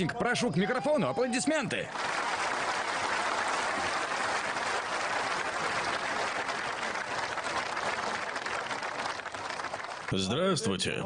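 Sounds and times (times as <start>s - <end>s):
crowd applauding: 1.9s - 10.4s.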